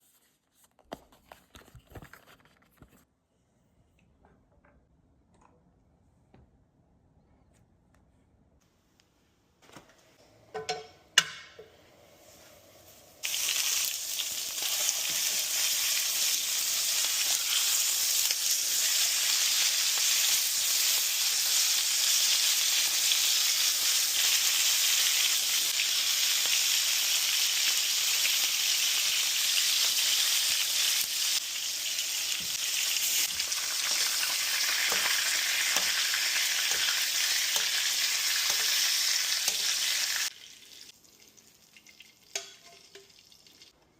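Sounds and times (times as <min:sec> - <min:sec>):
steaks sizzling in a pan: 0:13.2 - 0:40.3.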